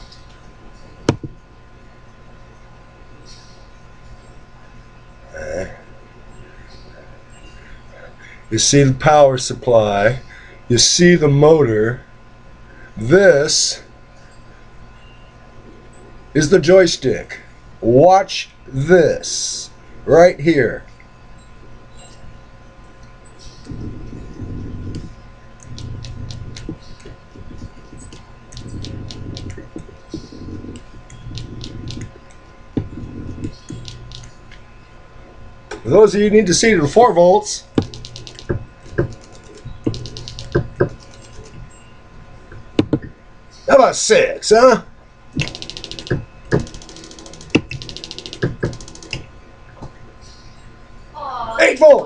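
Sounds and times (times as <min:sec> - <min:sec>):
small motor ticking: 0:23.8 - 0:34.4, 0:37.8 - 0:41.5, 0:45.4 - 0:49.2
small electric motor running: 0:27.4 - 0:32.1.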